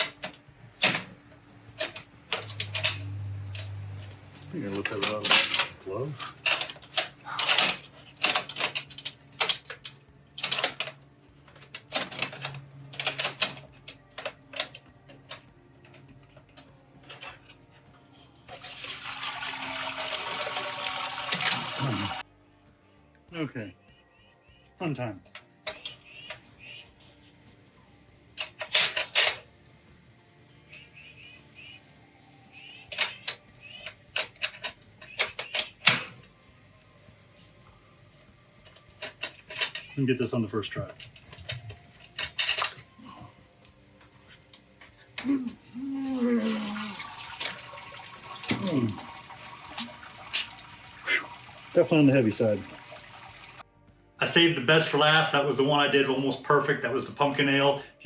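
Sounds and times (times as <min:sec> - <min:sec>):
metal clanks and knocks: 0:00.0 - 0:17.6, 0:38.6 - 0:40.0, 0:40.8 - 0:42.9
liquid pouring into kettle: 0:18.5 - 0:22.2, 0:46.4 - 0:53.6
metal squeaks: 0:32.7 - 0:36.1, 0:38.8 - 0:43.4.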